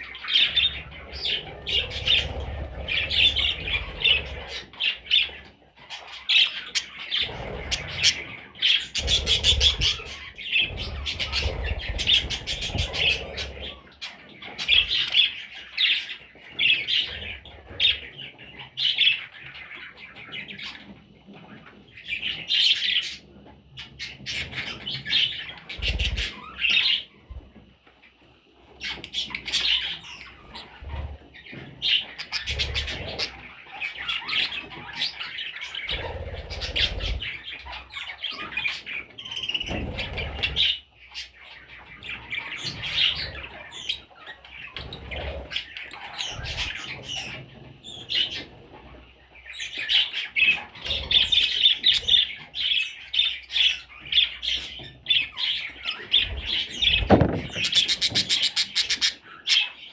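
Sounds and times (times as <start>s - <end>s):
bird chicks squawking: 0.0s - 59.9s.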